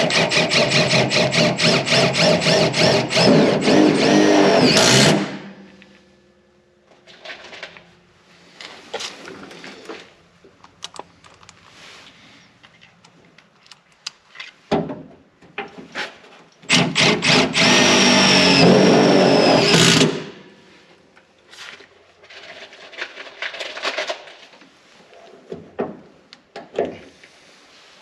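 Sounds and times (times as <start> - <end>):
power drill whining: 0.0 - 5.5, 16.7 - 20.4.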